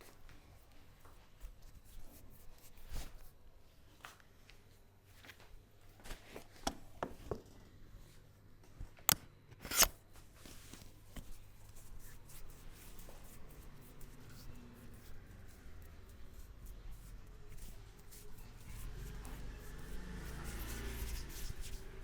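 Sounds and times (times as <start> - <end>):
soft rubbing: 10.6 - 22.0.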